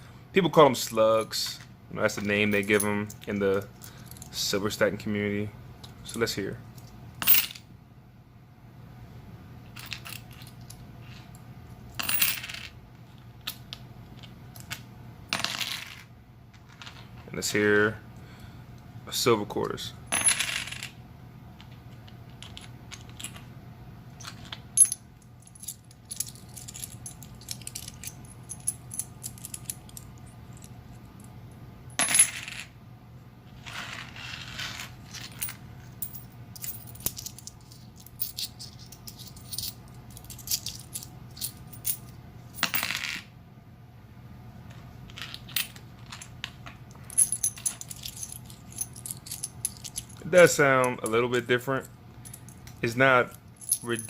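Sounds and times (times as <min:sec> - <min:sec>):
coins clinking and ringing: 0:12.0 - 0:12.7, 0:24.2 - 0:30.1, 0:32.0 - 0:32.7, 0:33.9 - 0:43.2, 0:47.1 - 0:50.2.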